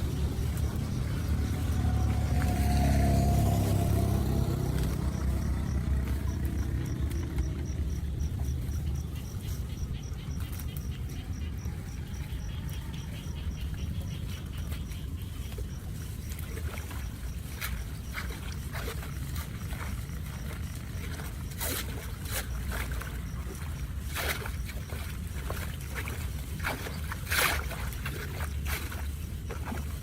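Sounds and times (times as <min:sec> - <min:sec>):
low rumble: 0:00.0 - 0:21.4
insect chirping: 0:00.0 - 0:26.8.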